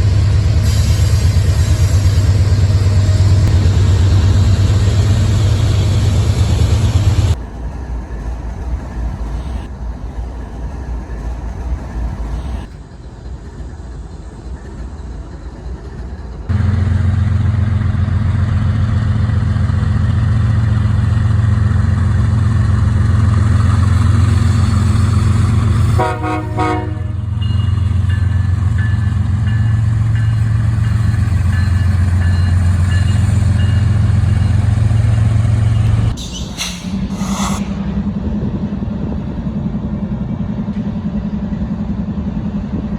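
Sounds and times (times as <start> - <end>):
diesel locomotive engine drone: 0.0 - 42.9
train horn blast: 25.9 - 27.4.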